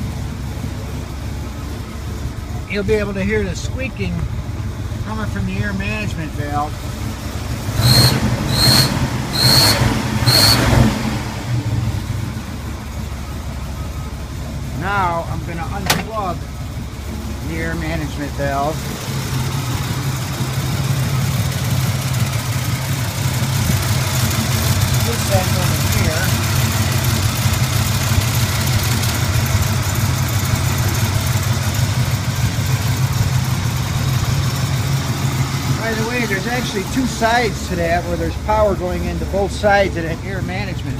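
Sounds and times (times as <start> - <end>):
car engine running rough: 0.0 - 40.9
high squeals: 7.8 - 10.9.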